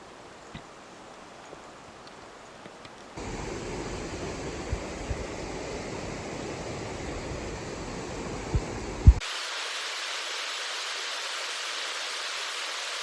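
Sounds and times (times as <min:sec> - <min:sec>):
stream water flowing: 0:00.0 - 0:13.0
short low thuds: 0:08.5 - 0:09.2.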